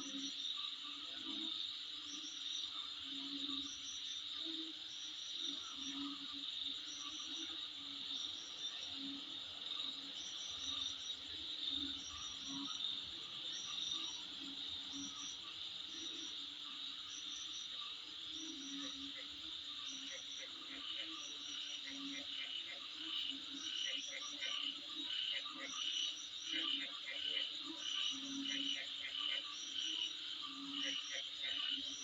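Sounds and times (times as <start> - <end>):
cricket chirps: 0.0 - 32.0
frog croaks: 0.0 - 32.0
insects trilling: 0.0 - 32.0.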